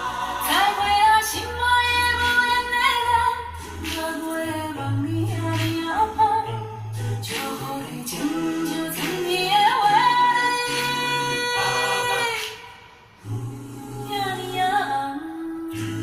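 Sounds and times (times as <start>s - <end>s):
instrumental backing music: 0.0s - 12.5s
woman singing ballad: 0.0s - 12.6s.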